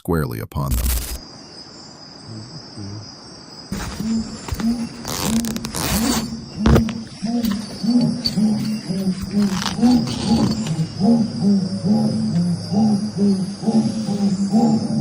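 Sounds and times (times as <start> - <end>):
night insects chirring: 0.1 - 15.0
short low calls: 2.2 - 3.1.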